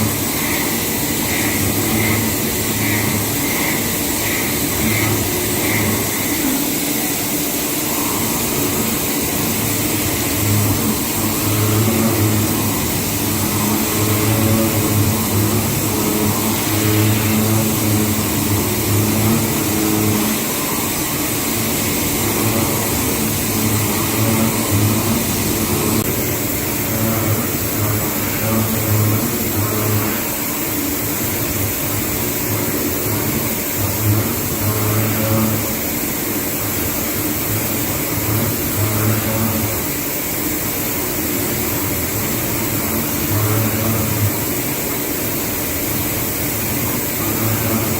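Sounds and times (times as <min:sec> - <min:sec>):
cnc machine running: 0:00.0 - 0:47.9.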